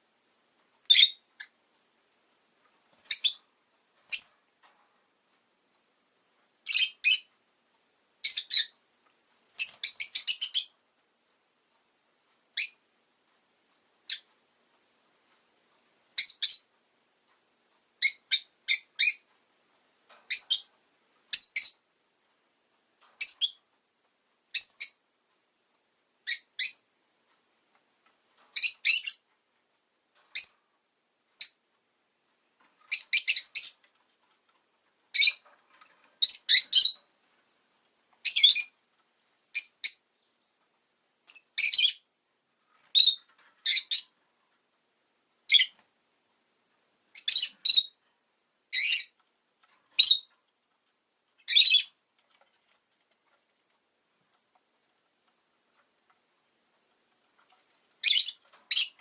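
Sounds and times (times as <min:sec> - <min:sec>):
lovebird chirping: 0:00.9 - 0:01.6, 0:03.1 - 0:03.5, 0:04.1 - 0:04.4, 0:06.6 - 0:07.3, 0:08.2 - 0:08.8, 0:09.6 - 0:10.8, 0:12.6 - 0:12.8, 0:14.1 - 0:14.3, 0:16.2 - 0:16.7, 0:18.0 - 0:19.3, 0:20.3 - 0:20.7, 0:21.3 - 0:21.9, 0:23.2 - 0:23.7, 0:24.5 - 0:25.0, 0:26.2 - 0:26.9, 0:28.6 - 0:29.3, 0:30.3 - 0:30.6, 0:31.4 - 0:31.6, 0:32.9 - 0:33.8, 0:35.1 - 0:35.4, 0:36.2 - 0:37.0, 0:38.2 - 0:38.8, 0:39.5 - 0:40.6, 0:41.3 - 0:42.1, 0:42.9 - 0:44.2, 0:45.5 - 0:45.8, 0:47.1 - 0:48.0, 0:48.7 - 0:49.2, 0:50.0 - 0:50.3, 0:51.4 - 0:52.0, 0:58.0 - 0:59.0.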